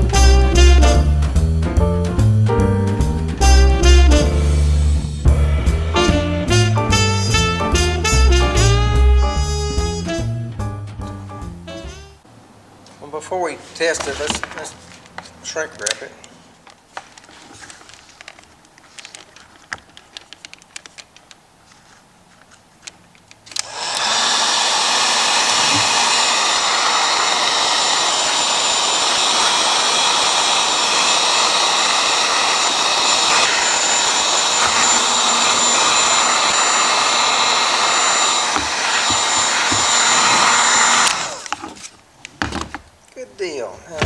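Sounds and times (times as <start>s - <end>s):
heat gun blowing: 23.5s - 41.8s.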